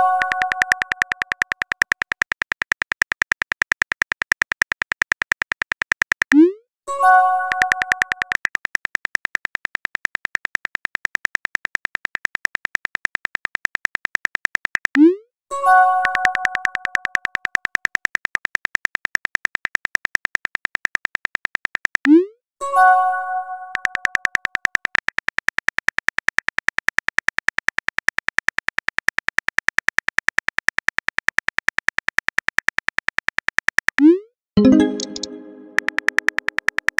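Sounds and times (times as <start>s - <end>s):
phone keyboard clicks: 0.0s - 6.4s, 7.4s - 15.1s, 16.0s - 22.1s, 23.7s - 36.9s
rising pop message sent sound: 34.0s - 36.4s.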